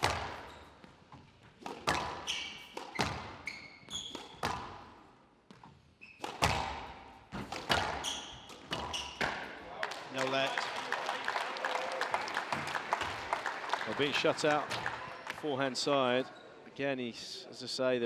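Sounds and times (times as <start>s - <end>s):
shoes squeaking on floor: 0.0s - 4.8s, 5.5s - 9.5s
squash ball smacking rackets and walls: 0.0s - 9.6s.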